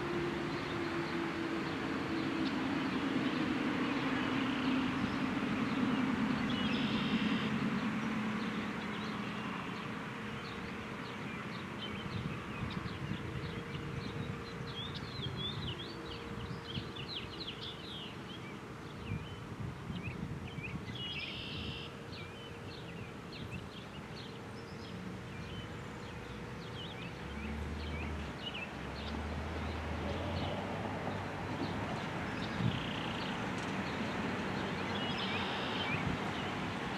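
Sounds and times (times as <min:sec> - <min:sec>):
distant warning siren: 0:00.0 - 0:11.0
birds chirping: 0:00.0 - 0:36.9.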